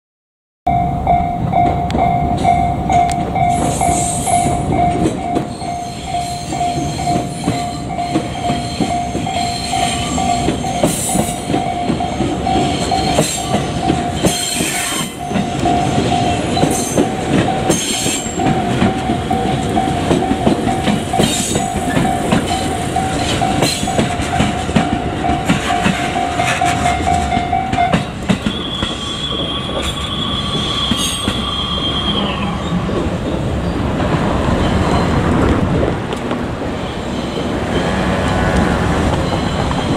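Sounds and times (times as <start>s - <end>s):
high tone: 0.7s - 32.6s
crossing warning bell ringing: 0.7s - 32.8s, 36.8s - 39.9s
train passing on rails: 0.7s - 39.9s.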